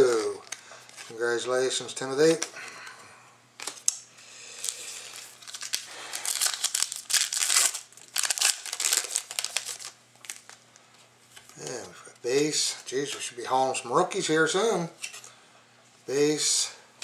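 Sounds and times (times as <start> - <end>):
foil wrapper crinkling and tearing: 4.6 - 10.6.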